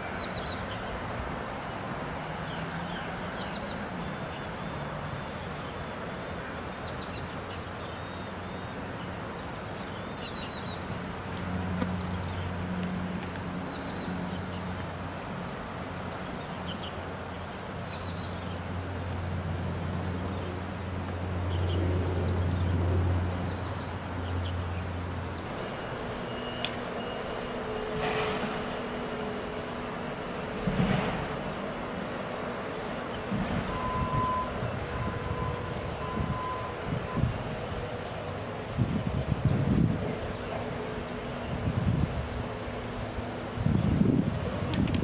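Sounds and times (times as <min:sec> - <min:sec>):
distant engine drone: 0:00.0 - 0:45.0
steady hiss: 0:25.4 - 0:45.0.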